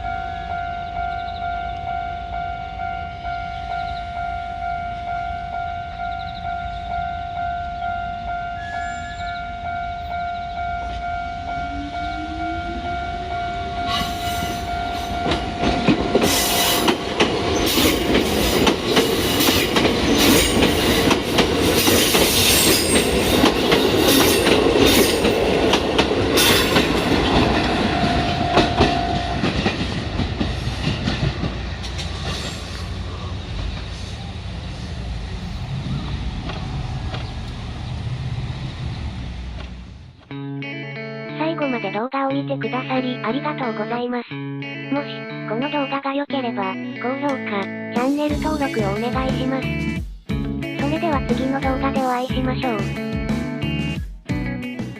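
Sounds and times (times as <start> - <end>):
level crossing warning bell: 0.0 - 25.7
train wheels clattering over rail joints: 15.2 - 32.8.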